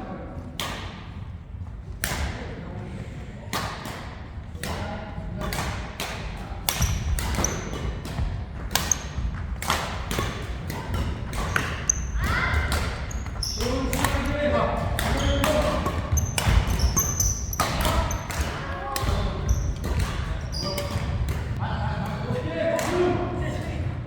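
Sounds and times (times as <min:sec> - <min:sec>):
racket striking shuttlecock: 0:05.4 - 0:21.6
shoe squeaks on court floor: 0:06.8 - 0:07.7, 0:11.4 - 0:12.2, 0:13.0 - 0:14.0, 0:15.1 - 0:18.3, 0:19.4 - 0:21.1.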